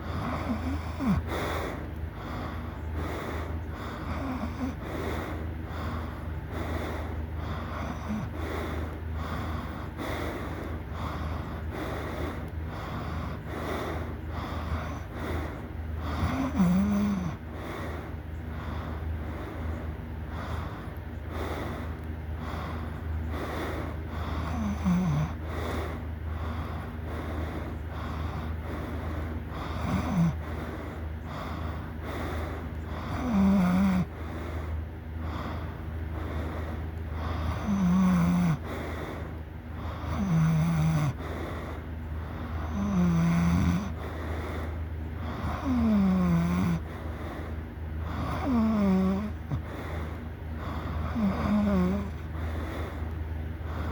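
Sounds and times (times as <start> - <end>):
person snoring loudly: 0.0 - 1.4, 7.5 - 8.4, 16.0 - 17.4, 24.3 - 25.8, 29.6 - 30.5, 32.9 - 34.2, 37.2 - 38.8, 39.8 - 41.3, 42.5 - 44.1, 45.2 - 46.9, 48.1 - 49.9, 50.6 - 52.2.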